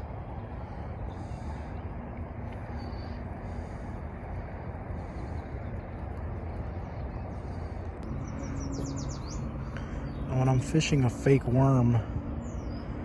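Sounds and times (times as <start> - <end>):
low steady hum: 0.0 - 13.0
steady outdoor rushing: 0.0 - 13.0
bird chirping: 6.7 - 11.6, 12.3 - 13.0.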